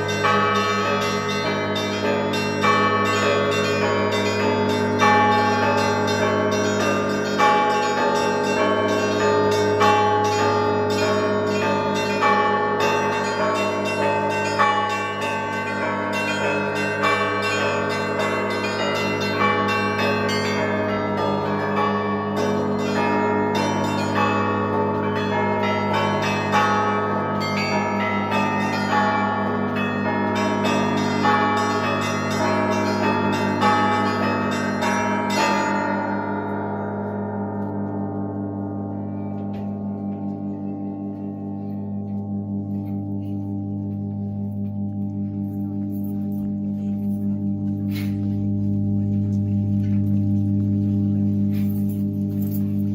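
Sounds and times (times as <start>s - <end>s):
large bells humming: 0.0s - 52.9s.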